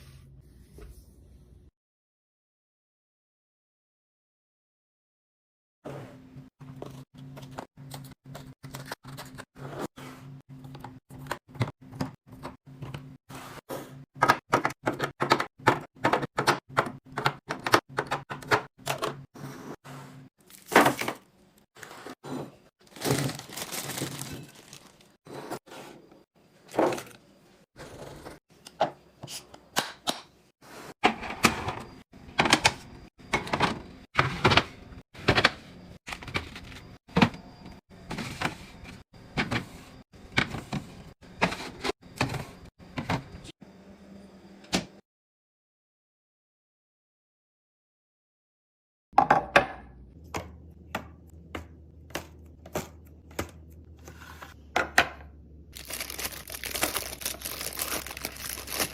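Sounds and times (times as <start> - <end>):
packaging crinkling: 22.8 - 25.2, 55.8 - 58.9.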